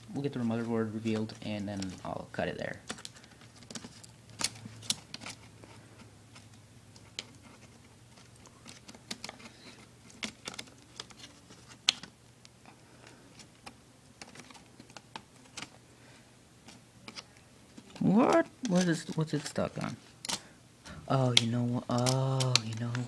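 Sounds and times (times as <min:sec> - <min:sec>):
faint low hum: 0:00.0 - 0:23.0
plastic and metal parts clicking: 0:07.2 - 0:12.1, 0:19.8 - 0:20.4, 0:21.3 - 0:23.0.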